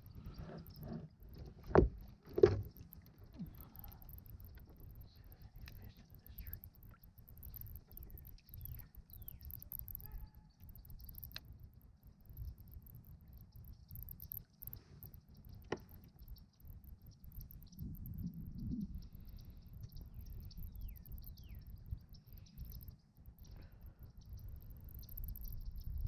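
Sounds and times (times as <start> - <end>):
sharp clicks: 1.7 - 11.5, 12.3 - 23.7
wind rumble on microphone: 14.8 - 26.0.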